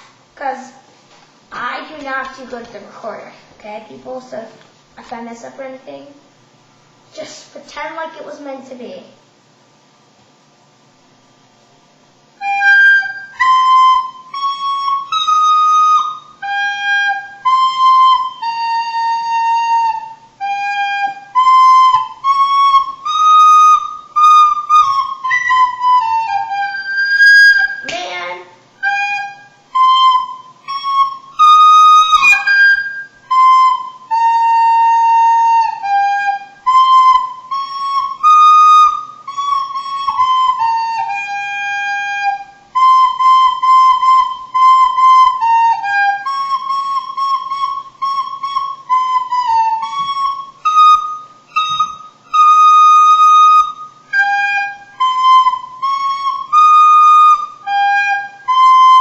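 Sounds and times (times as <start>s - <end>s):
recorder playing a simple tune: 12.4s - 59.0s.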